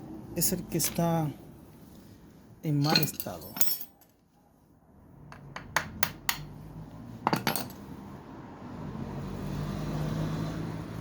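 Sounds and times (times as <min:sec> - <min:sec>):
metal tools clinking: 0:02.7 - 0:04.2, 0:07.3 - 0:07.8.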